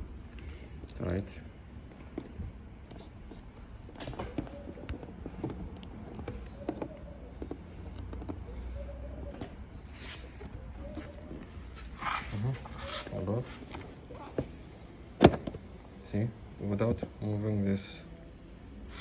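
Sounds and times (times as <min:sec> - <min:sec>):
hard-shell case lid and latch clicks: 0:15.2 - 0:15.6.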